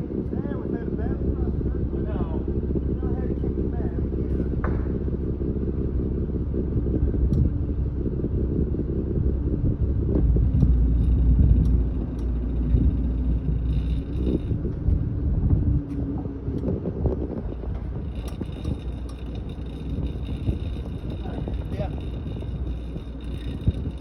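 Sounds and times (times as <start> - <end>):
boat engine low rumble: 0.0 - 24.0.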